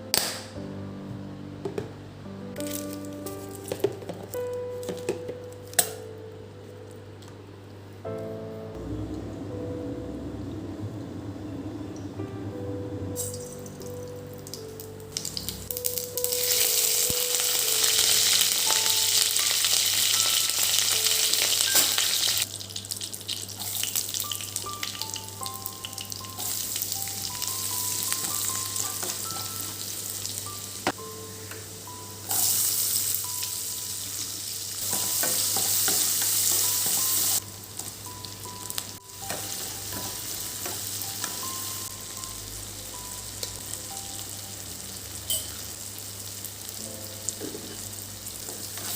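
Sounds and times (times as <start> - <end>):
soft background music: 0.0 - 48.9
food sizzling in a pan: 15.2 - 31.0, 31.7 - 48.9.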